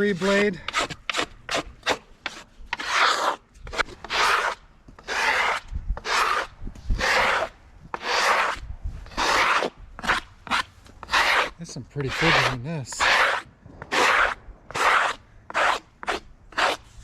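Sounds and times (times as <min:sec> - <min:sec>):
brush strokes on wood: 0:08.0 - 0:17.0.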